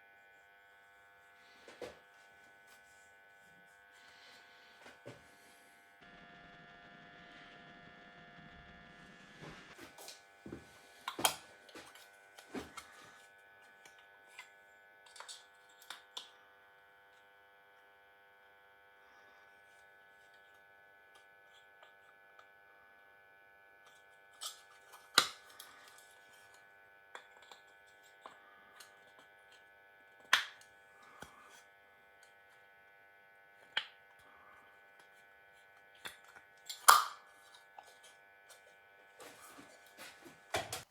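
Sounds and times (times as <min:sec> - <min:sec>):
lathe motor whine: 0:00.0 - 0:15.4.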